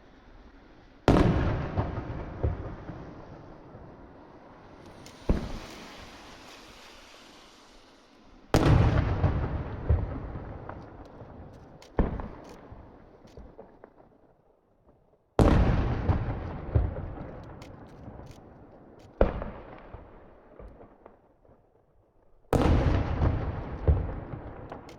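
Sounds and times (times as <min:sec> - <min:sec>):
firework crackling pops: 0:00.0 - 0:14.2, 0:15.4 - 0:21.6, 0:22.6 - 0:24.9
firework shells booming: 0:01.1 - 0:07.4, 0:08.6 - 0:14.0, 0:22.6 - 0:24.9.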